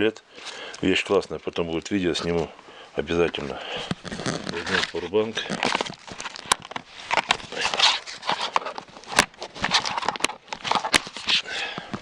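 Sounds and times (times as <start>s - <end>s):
rustling: 0.0s - 12.0s
plastic gadgets clicking and knocking: 3.2s - 12.0s.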